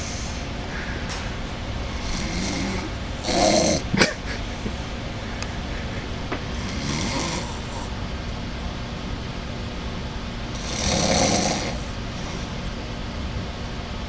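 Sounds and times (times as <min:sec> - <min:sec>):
man snoring: 0:00.0 - 0:08.0, 0:10.5 - 0:12.8.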